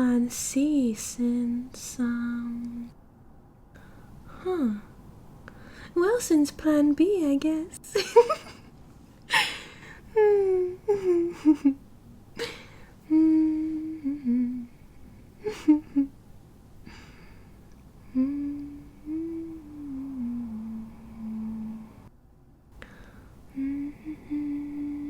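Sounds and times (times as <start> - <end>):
woman humming a slow melody: 0.0 - 2.9, 4.3 - 4.9, 10.1 - 11.8, 12.4 - 16.2, 18.0 - 22.1, 23.5 - 25.0
faint steady background noise: 0.0 - 25.0
breaths: 3.7 - 4.5, 5.4 - 6.0, 9.3 - 10.1, 12.4 - 13.2, 16.8 - 18.6, 22.8 - 24.4.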